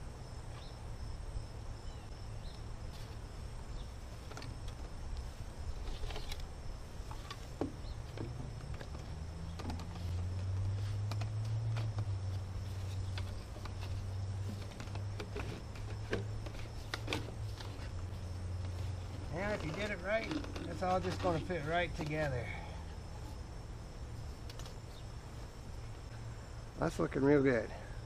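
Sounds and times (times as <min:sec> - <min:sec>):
plastic pipes clicking and knocking: 0:19.4 - 0:21.4.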